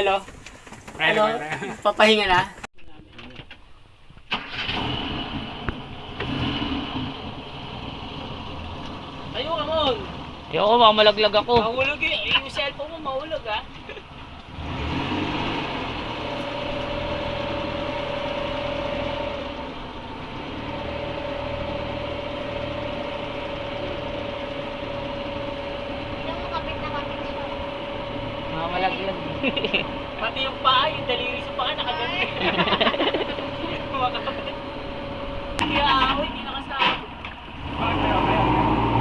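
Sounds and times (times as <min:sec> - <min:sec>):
vehicle engine running: 0:05.0 - 0:39.0
steady whine: 0:16.0 - 0:37.6.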